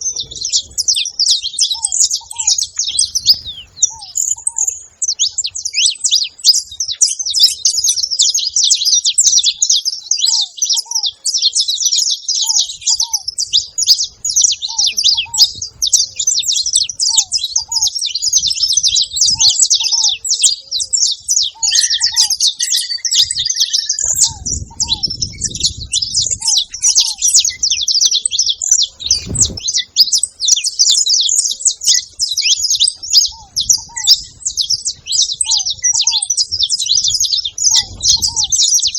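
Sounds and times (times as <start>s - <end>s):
lower bird call notes: 0.0s - 11.0s, 12.3s - 38.9s
finch singing chattering chirps: 0.0s - 38.9s.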